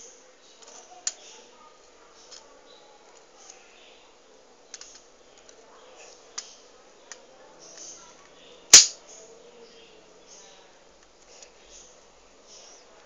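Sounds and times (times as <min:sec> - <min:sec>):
loud sharp plastic snap: 0:08.7 - 0:09.0.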